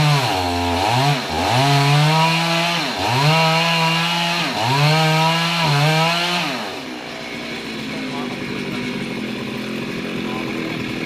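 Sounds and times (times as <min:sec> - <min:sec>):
chainsaw at high revs: 0:00.0 - 0:11.0.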